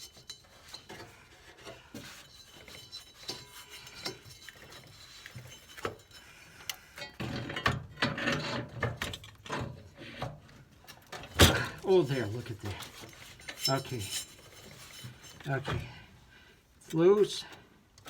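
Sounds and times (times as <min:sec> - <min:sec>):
hand tools on metal: 0:00.0 - 0:06.3, 0:11.1 - 0:16.0.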